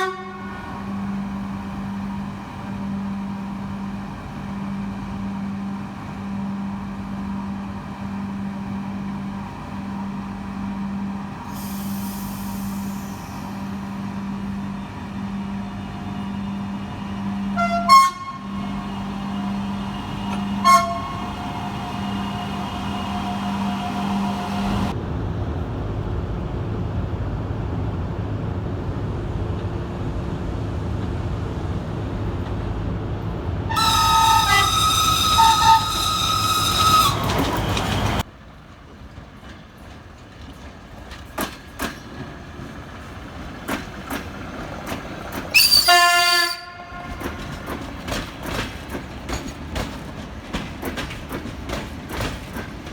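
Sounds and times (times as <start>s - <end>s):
train horns: 0.0s - 1.6s, 15.7s - 24.9s, 33.7s - 38.2s, 45.5s - 47.7s
passing train rumble: 0.0s - 52.9s
wheels clicking over rail joints: 33.2s - 52.9s.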